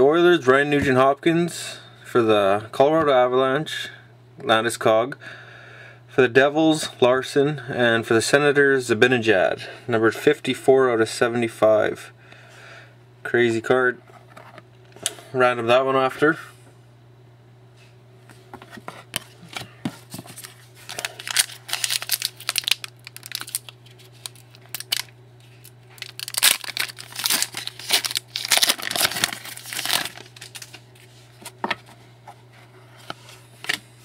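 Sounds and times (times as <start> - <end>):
wrapper crinkling and tearing: 20.3 - 31.1.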